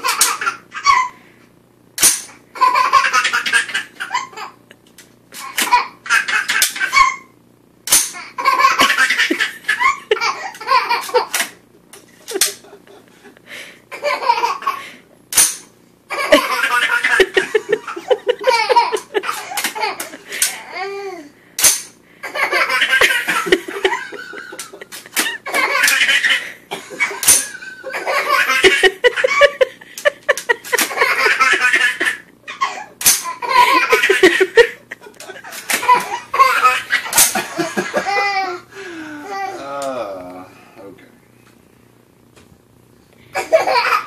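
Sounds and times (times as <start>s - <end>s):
baby laughing: 0.0s - 1.2s, 2.6s - 4.7s, 5.4s - 7.3s, 8.2s - 11.4s, 13.9s - 14.9s, 16.1s - 21.3s, 22.2s - 38.7s, 43.4s - 44.0s.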